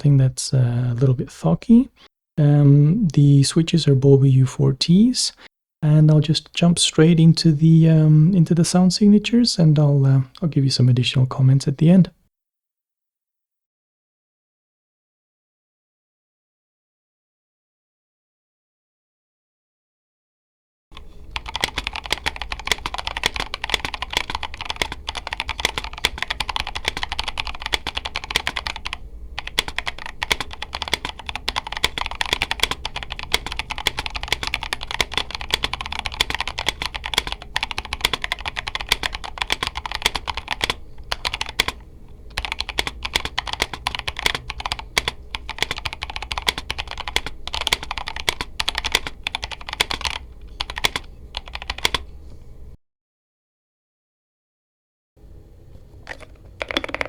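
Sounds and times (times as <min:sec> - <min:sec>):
mechanical keyboard typing: 0:21.0 - 0:52.1, 0:56.0 - 0:57.0.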